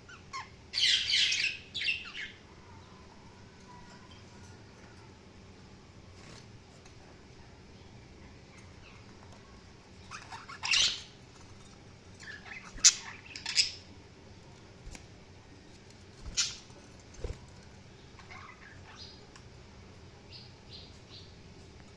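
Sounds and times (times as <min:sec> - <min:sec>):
budgerigars chirping and squawking: 0:10.1 - 0:11.1, 0:12.2 - 0:13.8, 0:18.2 - 0:19.2.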